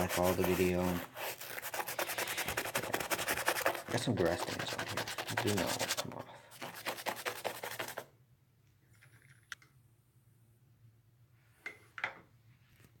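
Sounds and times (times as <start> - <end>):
brush scrubbing a shoe: 0.0 - 8.1.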